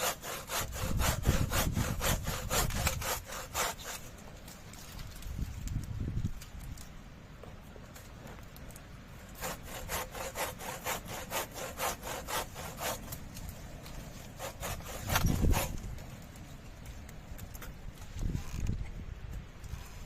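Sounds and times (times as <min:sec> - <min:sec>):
hand saw cutting wood: 0:00.0 - 0:04.2, 0:09.4 - 0:16.0.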